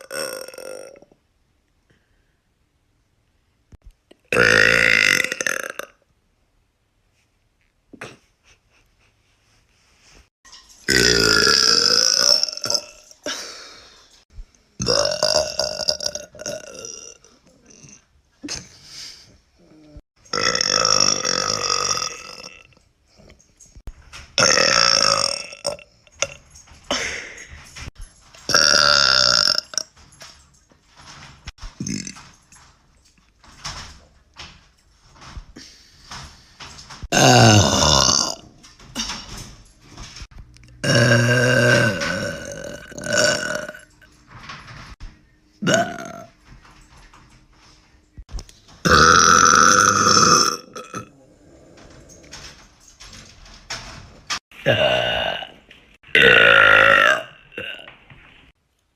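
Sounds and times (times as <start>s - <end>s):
woman burping: 0.0s - 1.1s, 4.3s - 6.0s, 10.9s - 14.0s, 20.3s - 22.7s, 24.4s - 27.5s, 28.5s - 29.8s, 37.1s - 38.4s, 40.8s - 43.9s, 45.6s - 46.3s, 48.8s - 51.2s, 54.6s - 58.0s.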